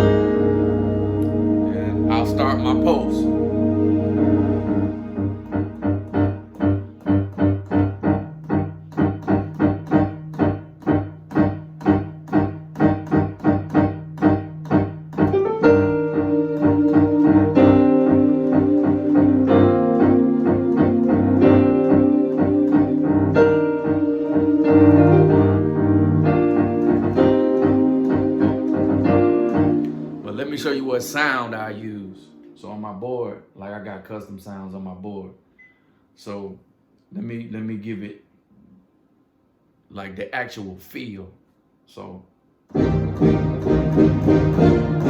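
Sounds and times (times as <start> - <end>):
keyboard pulsing low note: 0.0 - 33.2, 42.7 - 45.0
steady low tone: 0.0 - 33.2
keyboard held chords: 0.0 - 33.4, 42.7 - 45.0.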